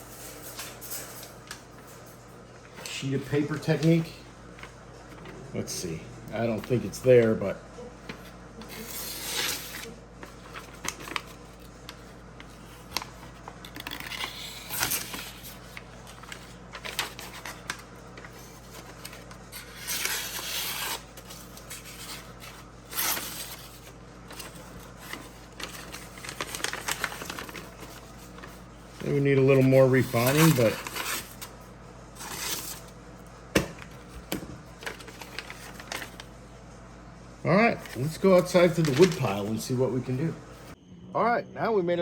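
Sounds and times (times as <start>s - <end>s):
blade cutting through paper: 12.6s - 28.1s.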